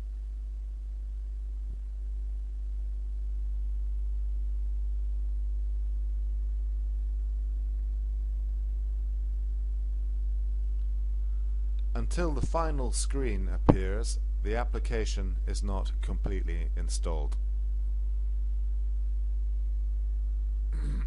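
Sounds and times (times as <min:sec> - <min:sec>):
low electrical hum: 0:00.0 - 0:21.0.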